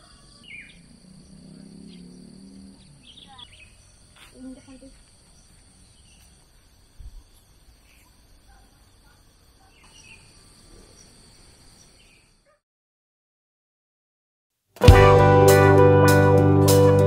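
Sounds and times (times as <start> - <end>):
high insect trill: 0.0 - 12.6.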